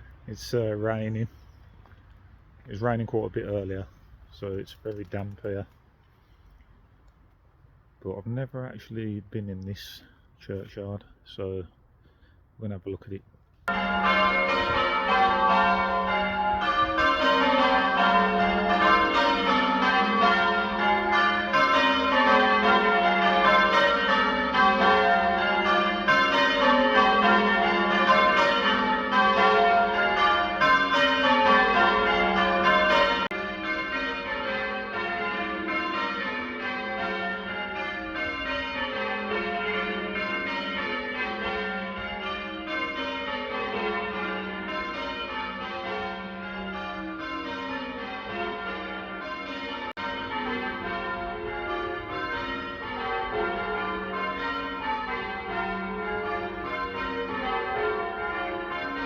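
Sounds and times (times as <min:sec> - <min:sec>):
church bells ringing: 0:13.6 - 0:59.0.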